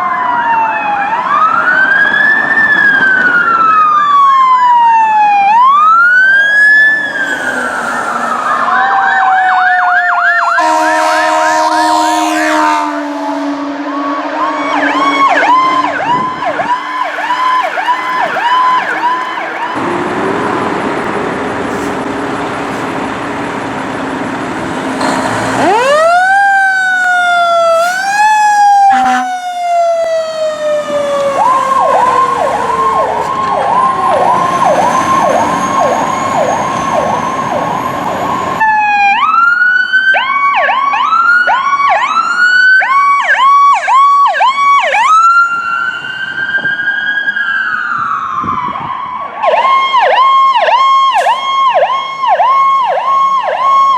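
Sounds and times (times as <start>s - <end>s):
electronic emergency siren: 0.0s - 53.9s
traffic and engine noise: 0.0s - 53.9s.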